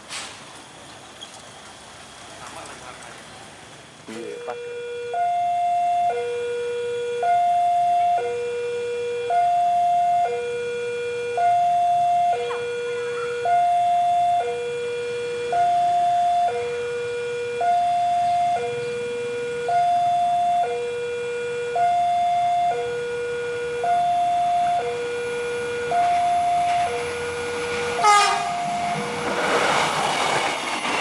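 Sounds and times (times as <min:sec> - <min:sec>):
level crossing two-tone alarm: 0:04.1 - 0:31.0.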